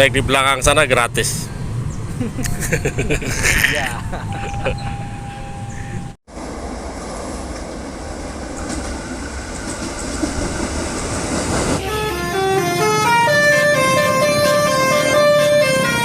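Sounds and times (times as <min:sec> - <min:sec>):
vehicle noise: 0:00.0 - 0:16.0
multi-tone bus horn melody: 0:11.8 - 0:16.0.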